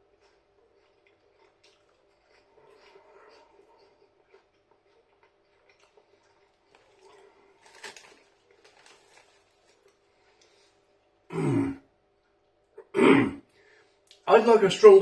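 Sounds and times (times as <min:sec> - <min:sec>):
chewing crunchy snacks: 0:00.0 - 0:11.1
person clearing throat: 0:11.3 - 0:11.8, 0:12.8 - 0:13.5.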